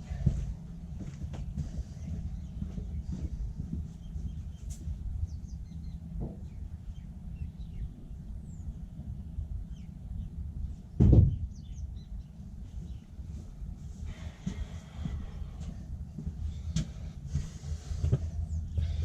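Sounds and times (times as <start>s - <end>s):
steady low rumble: 0.0s - 19.0s
small birds chirping: 0.1s - 15.6s, 16.3s - 19.0s
loud thump: 11.0s - 11.4s.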